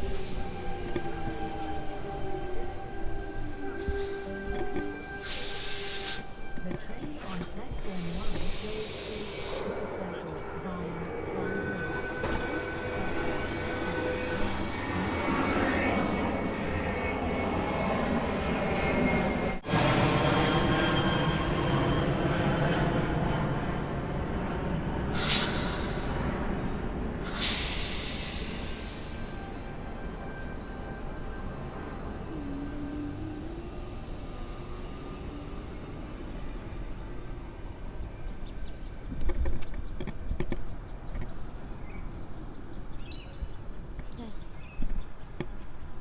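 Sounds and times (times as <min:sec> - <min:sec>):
electric train rumbling: 0:00.0 - 0:46.0
air hiss bursts: 0:05.2 - 0:06.3, 0:08.1 - 0:09.7, 0:25.2 - 0:26.5, 0:27.2 - 0:29.6.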